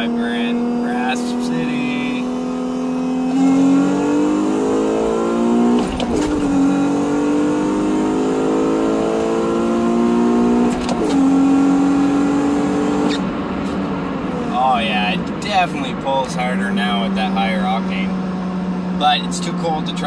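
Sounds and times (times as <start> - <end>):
car engine revving at full throttle: 0.0 - 20.0
gear shift click: 5.6 - 6.8, 10.6 - 11.2.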